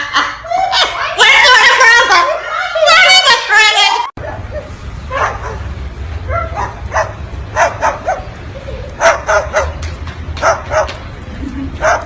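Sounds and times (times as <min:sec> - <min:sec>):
dog-like barks and yaps: 0:04.2 - 0:05.7, 0:06.3 - 0:08.3, 0:09.0 - 0:09.8, 0:10.4 - 0:11.0.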